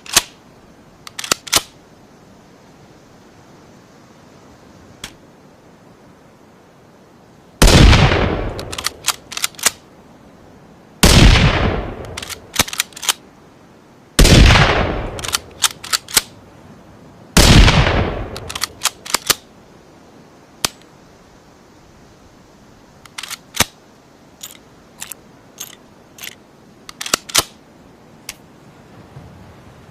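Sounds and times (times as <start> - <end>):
rifle shots: 7.6 - 9.8, 11.0 - 13.2, 14.2 - 16.3, 17.4 - 19.4.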